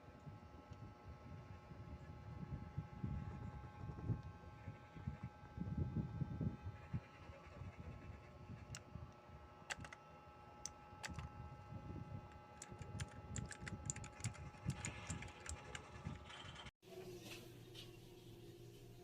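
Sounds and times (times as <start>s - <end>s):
clicky keyboard keystrokes: 9.7s - 10.0s, 11.0s - 11.3s, 12.6s - 16.6s.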